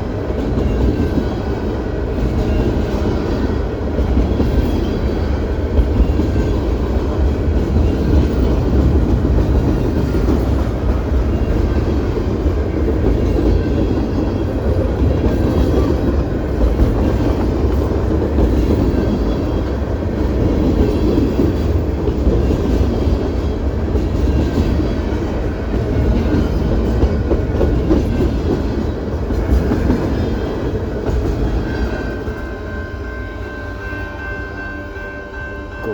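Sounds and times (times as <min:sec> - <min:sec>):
train cars rumbling over rails: 0:00.0 - 0:35.9
steady high tone: 0:32.0 - 0:35.9.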